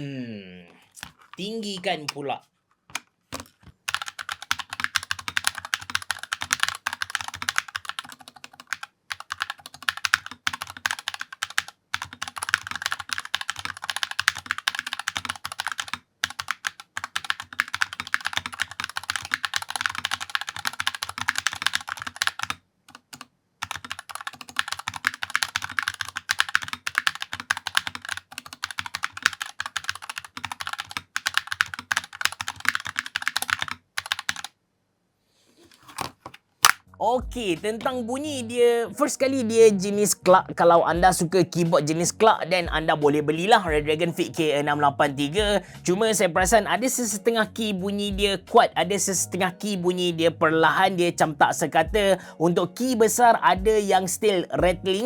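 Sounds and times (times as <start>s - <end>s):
fast mechanical keyboard typing: 3.9s - 34.5s.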